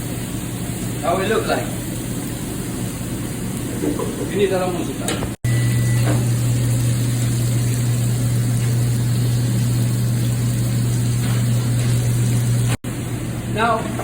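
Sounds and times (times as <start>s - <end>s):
low machine hum: 3.0s - 14.0s.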